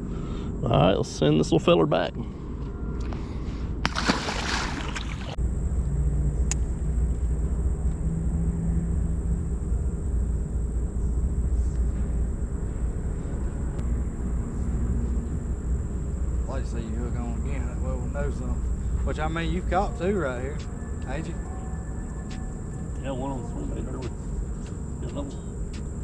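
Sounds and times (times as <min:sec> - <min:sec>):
fish splash into water: 0:03.8 - 0:05.4.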